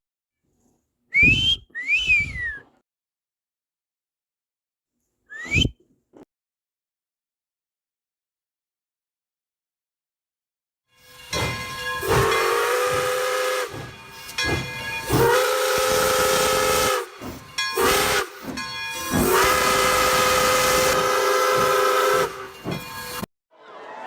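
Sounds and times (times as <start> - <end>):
steam locomotive whistle: 11.0 - 23.3
steam hissing: 11.4 - 23.2.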